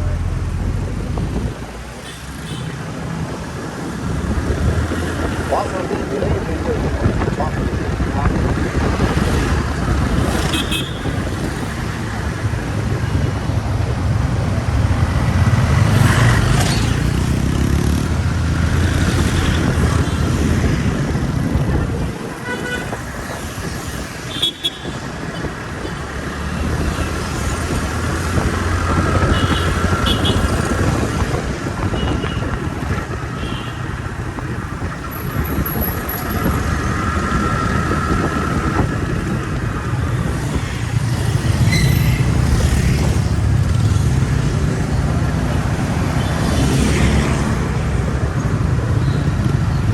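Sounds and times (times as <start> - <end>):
road traffic noise: 0.0 - 49.9.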